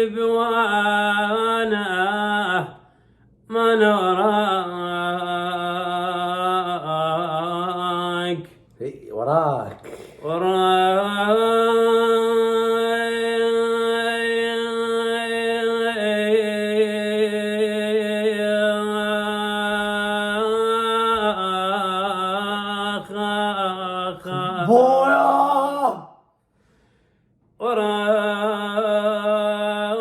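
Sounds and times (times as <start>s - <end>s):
man singing long held note: 10.2s - 26.2s.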